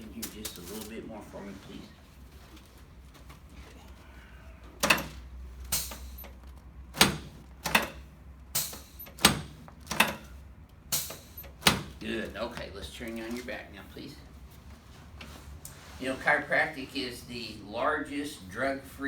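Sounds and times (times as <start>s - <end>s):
sharp clacks of chiropractic adjusting: 4.8s - 12.2s.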